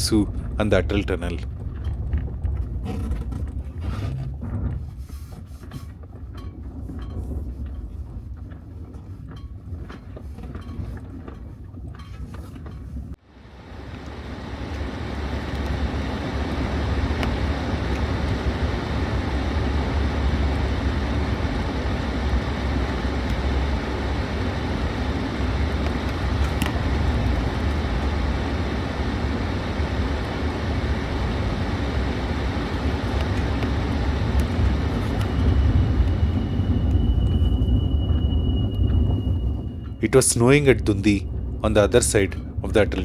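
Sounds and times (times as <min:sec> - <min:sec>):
car driving road noise: 0:13.7 - 0:43.0.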